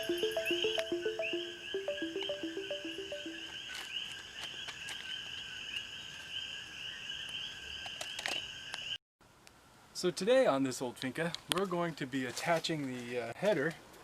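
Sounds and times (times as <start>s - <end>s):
plucked melody: 0.0s - 3.4s.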